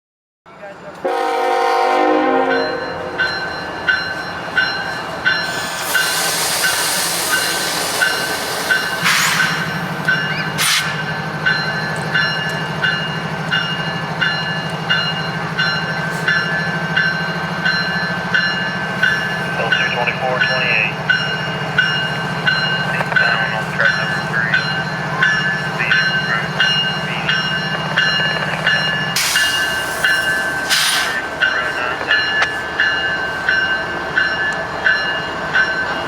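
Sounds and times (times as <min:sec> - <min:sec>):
locomotive air horn chord: 0:01.0 - 0:03.2
locomotive engine running: 0:02.7 - 0:36.0.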